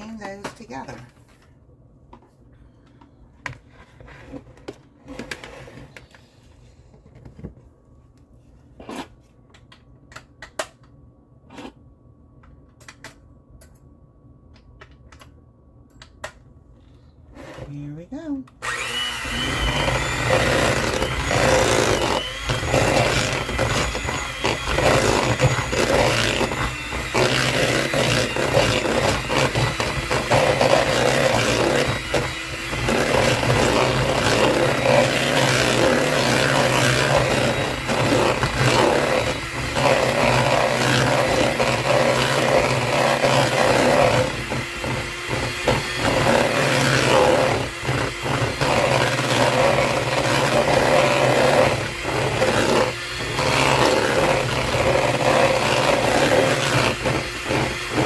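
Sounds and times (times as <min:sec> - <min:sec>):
electric hand mixer running: 0:18.6 - 0:58.0.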